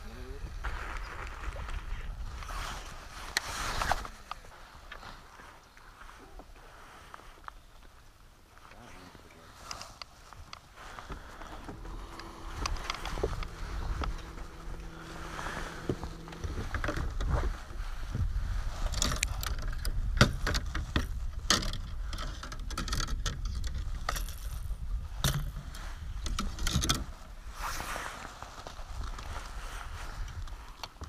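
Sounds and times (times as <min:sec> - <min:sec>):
steady low hum: 0:08.4 - 0:22.8
wind and water rumble: 0:09.2 - 0:31.0
fishing gear clicking and rattling: 0:09.6 - 0:17.9, 0:18.6 - 0:27.2.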